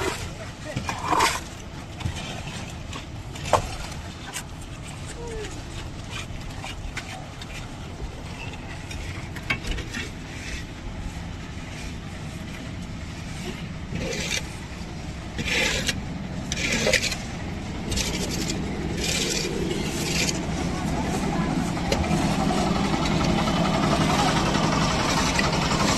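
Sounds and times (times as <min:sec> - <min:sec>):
steady low rumble: 0:00.0 - 0:25.9
harsh scraping strokes: 0:06.1 - 0:25.9.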